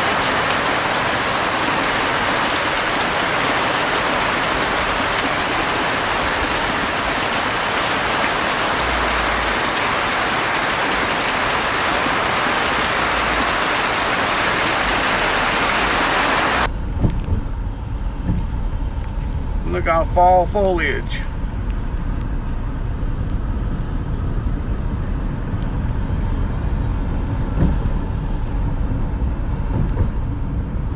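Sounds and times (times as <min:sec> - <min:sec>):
rain falling: 0:00.0 - 0:16.7.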